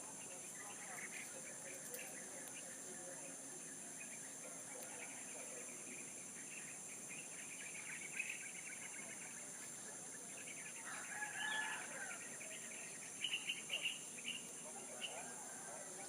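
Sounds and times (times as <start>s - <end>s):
small birds chirping: 0.0s - 16.0s
faint rooster crowing: 10.8s - 12.6s, 14.8s - 16.0s.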